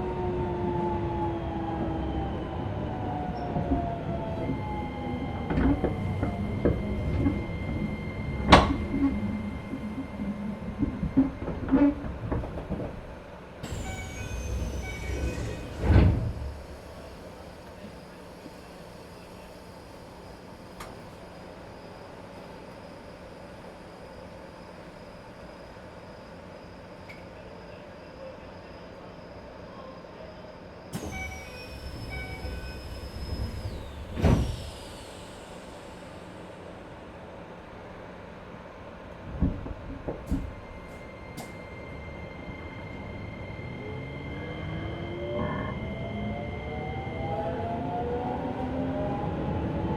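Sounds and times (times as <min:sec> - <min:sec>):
train wheels rumbling over rails: 0:00.0 - 0:25.0, 0:30.9 - 0:49.9
train door chime: 0:31.0 - 0:34.7.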